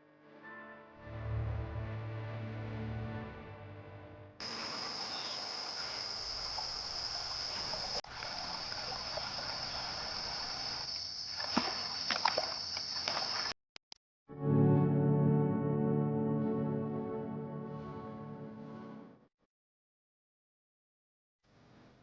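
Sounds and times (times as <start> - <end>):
music: 0.0 - 4.4, 14.3 - 19.3
insect chorus drone: 4.4 - 13.5.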